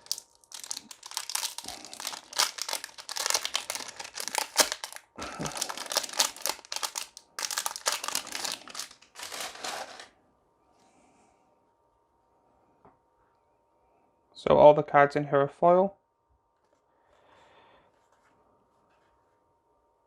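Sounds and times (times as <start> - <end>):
plastic wrapper crinkling and tearing: 0.0 - 10.1.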